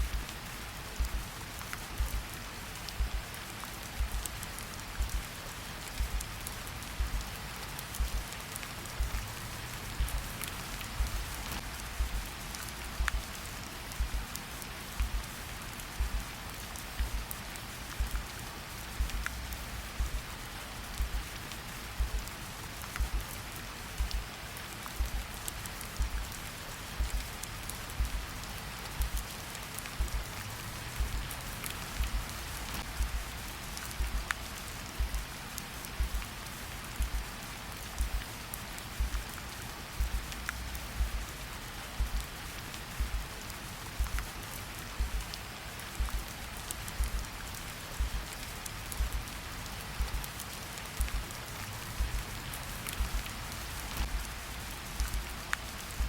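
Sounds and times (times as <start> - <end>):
slow heartbeat thumps: 0.0 - 0.3, 0.9 - 1.3, 1.9 - 2.2, 2.9 - 3.3, 3.9 - 4.3, 4.9 - 5.3, 6.0 - 6.3, 7.0 - 7.3, 7.9 - 8.2, 9.0 - 9.3, 9.9 - 10.3, 10.9 - 12.3, 13.0 - 13.3, 14.0 - 14.3, 14.9 - 15.3, 15.9 - 16.3, 16.9 - 17.3, 18.0 - 18.3, 19.0 - 20.3, 20.9 - 21.3, 22.0 - 22.3, 23.0 - 23.3, 24.0 - 24.3, 25.0 - 25.3, 26.0 - 26.3, 27.0 - 27.3, 28.0 - 28.3, 29.0 - 29.3, 30.0 - 30.3, 31.0 - 31.4, 32.0 - 33.4, 34.0 - 34.3, 35.0 - 35.3, 36.0 - 36.3, 37.0 - 37.3, 38.0 - 38.3, 39.0 - 39.4, 40.0 - 41.4, 42.0 - 42.4, 43.0 - 43.3, 44.0 - 44.3, 45.0 - 45.3, 46.0 - 46.3, 47.0 - 47.4, 48.0 - 48.4, 49.0 - 49.3, 50.0 - 50.3, 51.0 - 51.3, 52.0 - 52.3, 53.0 - 53.3, 54.0 - 54.4, 55.0 - 55.3
steady rain falling: 0.0 - 56.0.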